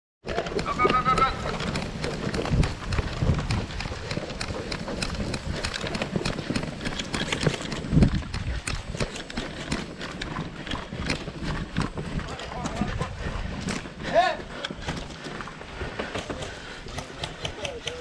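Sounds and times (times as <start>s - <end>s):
sharp clicks and knocks: 0.3s - 13.0s
gear rattling: 0.3s - 14.0s
low rumble of wind on microphone: 1.8s - 14.0s.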